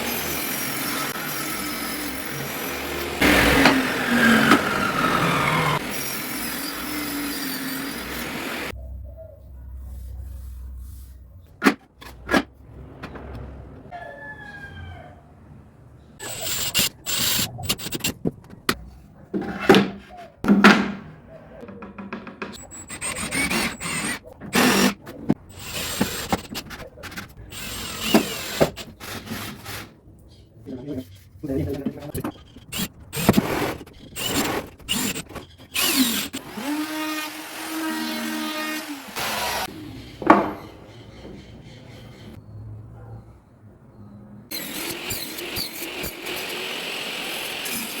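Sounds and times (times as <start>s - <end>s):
small power tool motor running: 0.0s - 8.7s, 44.5s - 48.0s
sharp clicks and knocks: 21.6s - 22.9s.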